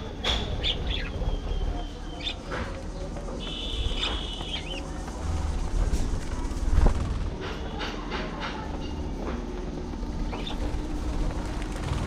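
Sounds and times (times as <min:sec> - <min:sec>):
steady low rumble: 0:00.0 - 0:07.7, 0:08.9 - 0:12.0
budgerigars chirping: 0:00.3 - 0:02.4.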